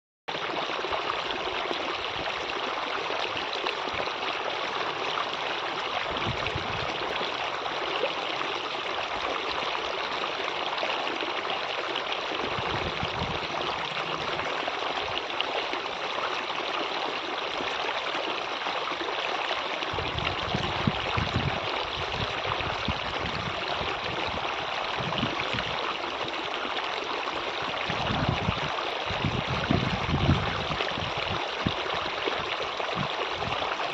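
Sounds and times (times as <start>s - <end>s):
flowing stream water: 0.3s - 33.9s.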